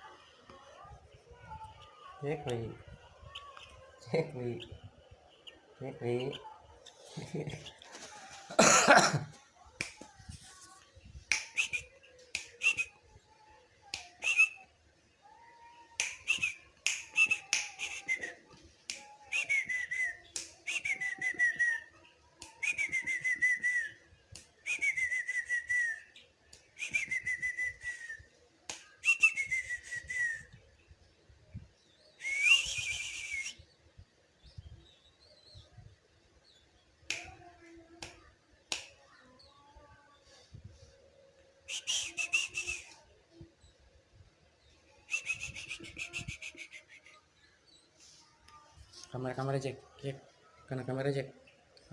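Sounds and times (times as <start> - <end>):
songbird whistled calls: 32.2 - 33.7, 45.1 - 47.2.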